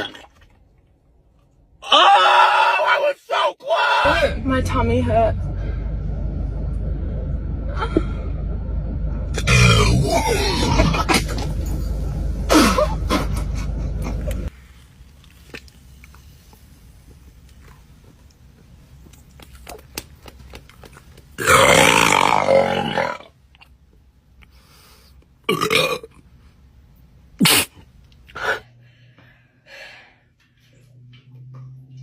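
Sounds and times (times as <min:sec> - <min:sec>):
person burping: 0:09.4 - 0:11.5, 0:25.5 - 0:26.2.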